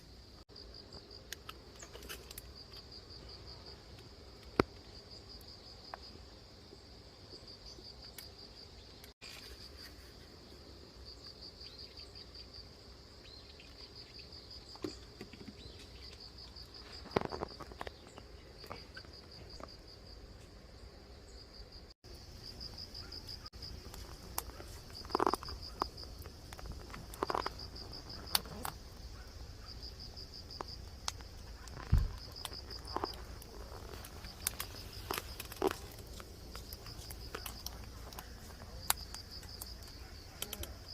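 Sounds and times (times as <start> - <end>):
crickets chirping: 0.0 - 40.9
firewood crackling and popping: 22.1 - 40.9.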